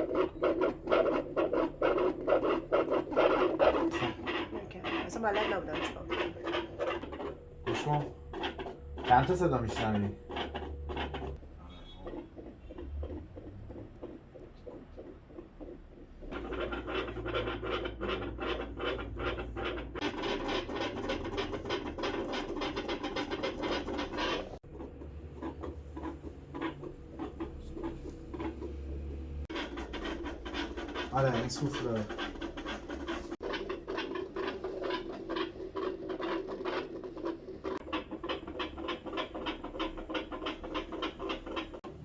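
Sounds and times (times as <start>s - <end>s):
stethoscope rubbing on fur: 0.0s - 42.0s
dog heartbeat through stethoscope: 2.3s - 30.4s.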